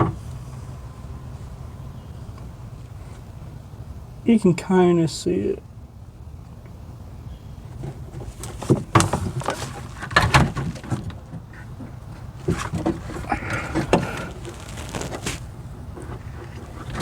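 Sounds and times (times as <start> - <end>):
brief scraping: 13.1 - 15.6.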